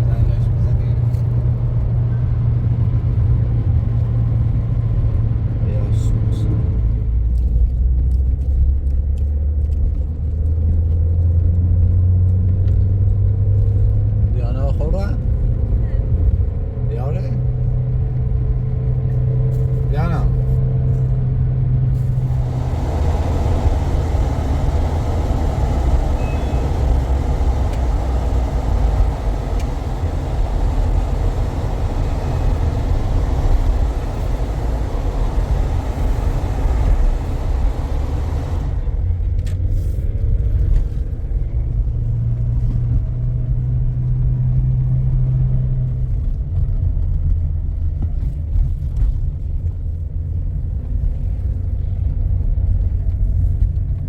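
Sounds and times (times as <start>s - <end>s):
vehicle engine and road rumble: 0.0s - 54.0s
road hiss: 21.9s - 39.1s.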